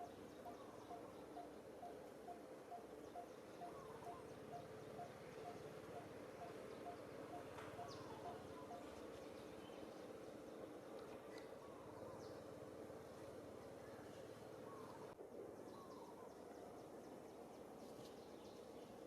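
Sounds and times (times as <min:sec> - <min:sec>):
bird chirps: 0:00.0 - 0:10.0.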